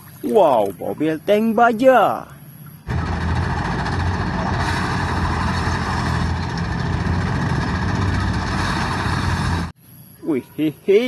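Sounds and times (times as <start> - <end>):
tank engine rumbling: 2.4 - 9.8.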